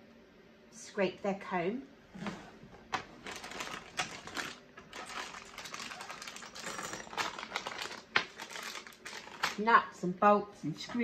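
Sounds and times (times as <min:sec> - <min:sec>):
packaging clicks and rustles: 0:02.8 - 0:09.6.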